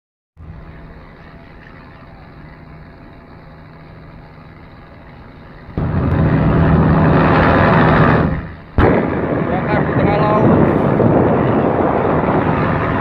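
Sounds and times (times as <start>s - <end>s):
ship engine drone: 0.4s - 13.0s
loud rushing noise: 5.8s - 13.0s.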